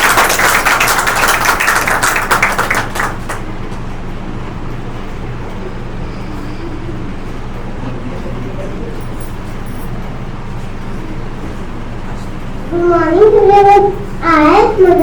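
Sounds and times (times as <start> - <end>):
audience applauding: 0.0 - 3.6
steady low hum: 0.0 - 15.0.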